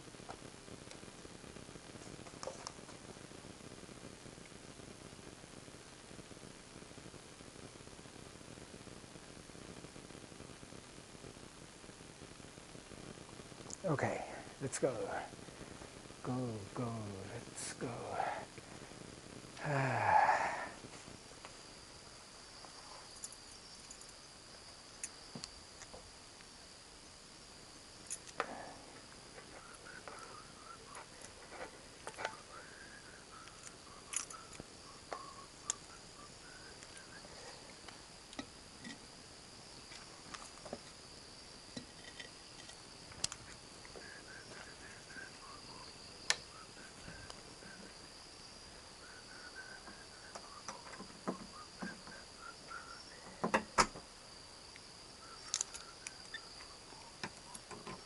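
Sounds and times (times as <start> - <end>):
insects chirring: 0.0 - 58.0
sharp clicks and knocks: 53.4 - 54.0.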